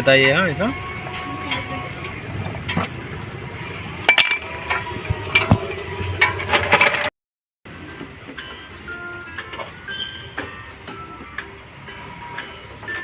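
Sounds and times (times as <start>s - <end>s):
metal tools clinking: 4.1s - 7.1s.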